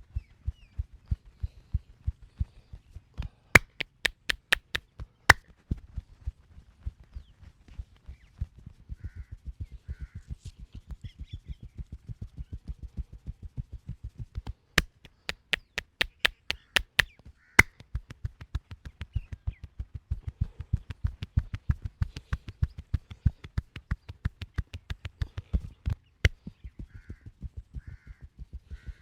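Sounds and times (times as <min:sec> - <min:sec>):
hands tapping on body: 0:03.6 - 0:04.8, 0:14.8 - 0:17.7, 0:20.8 - 0:26.4
sharp hand claps: 0:03.6 - 0:04.8, 0:14.8 - 0:17.7, 0:23.4 - 0:25.6.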